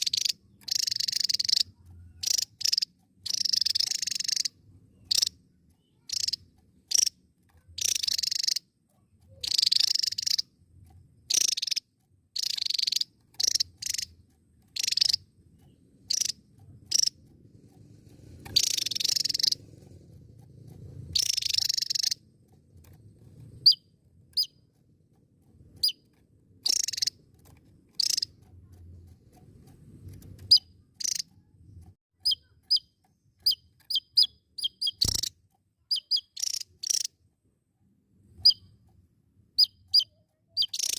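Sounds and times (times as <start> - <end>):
bird sharp chirps: 0.0 - 10.5, 11.2 - 17.2, 18.4 - 19.7, 21.1 - 22.2, 25.8 - 27.2, 27.9 - 28.4, 30.2 - 31.3, 32.2 - 37.2, 38.3 - 38.8, 39.5 - 40.9
bird scratchy warbling: 0.0 - 37.1, 39.5 - 40.9.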